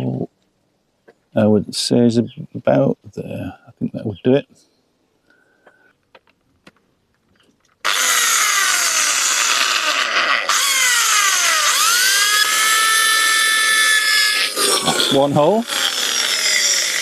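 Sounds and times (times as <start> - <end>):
power drill boring through metal tube: 7.8 - 17.0.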